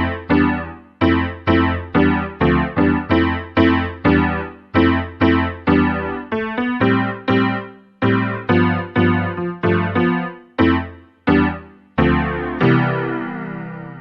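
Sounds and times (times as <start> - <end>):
keyboard piano chords: 0.0 - 14.0.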